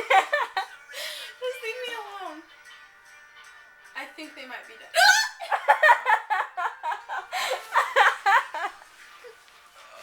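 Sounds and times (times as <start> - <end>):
girl squealing: 5.0 - 5.4.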